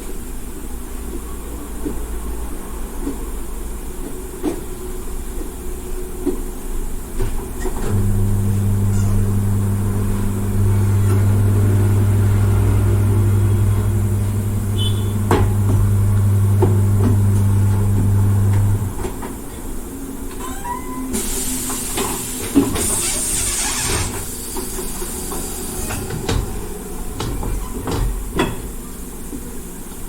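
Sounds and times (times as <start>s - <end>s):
machine motor humming: 7.8s - 19.0s.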